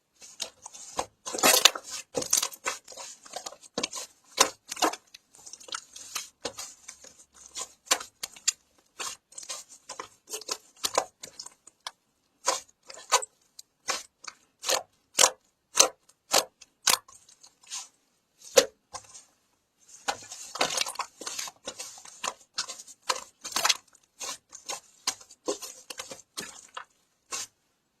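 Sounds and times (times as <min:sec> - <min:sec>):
crinkly rustling: 0:17.1 - 0:27.7.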